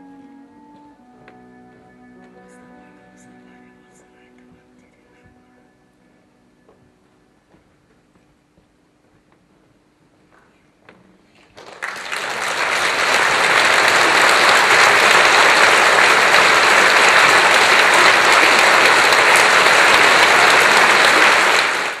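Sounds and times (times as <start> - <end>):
audience clapping: 11.4 - 22.0.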